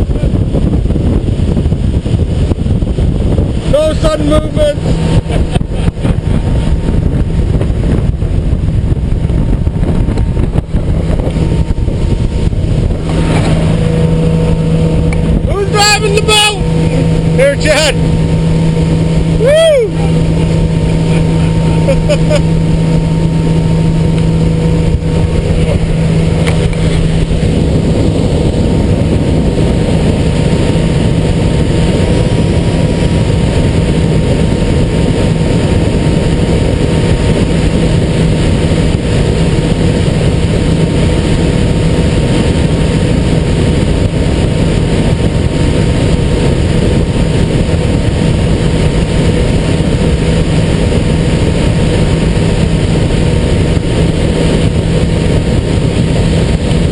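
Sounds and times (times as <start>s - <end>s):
boat motor humming: 0.0s - 56.9s
water rushing past boat: 0.0s - 56.9s.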